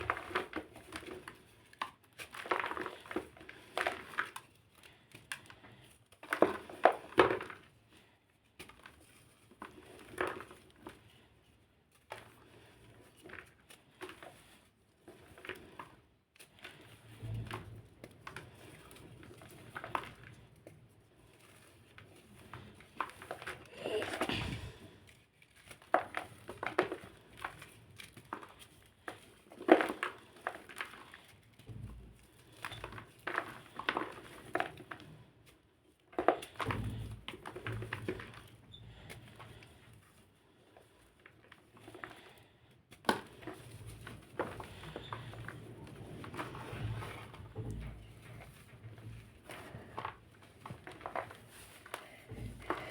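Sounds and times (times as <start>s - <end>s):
crunchy blocks being crushed: 0.0s - 7.8s, 22.0s - 35.3s.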